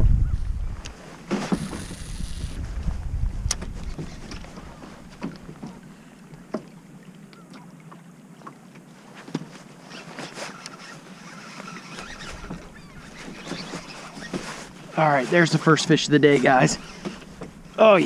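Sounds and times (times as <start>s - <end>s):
water lapping against kayak hull: 0.9s - 18.0s
small knocks and splashes: 3.6s - 10.7s.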